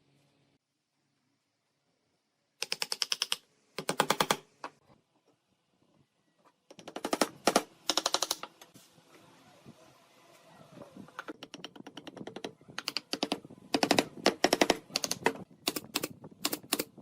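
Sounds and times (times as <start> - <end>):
rapid sharp mechanical clicks: 2.6 - 4.4, 6.7 - 8.5, 11.3 - 16.9.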